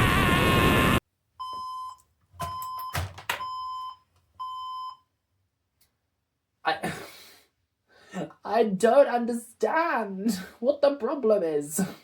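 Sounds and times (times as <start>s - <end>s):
loud rushing noise: 0.0s - 1.0s
electronic censor bleeps: 0.6s - 5.1s.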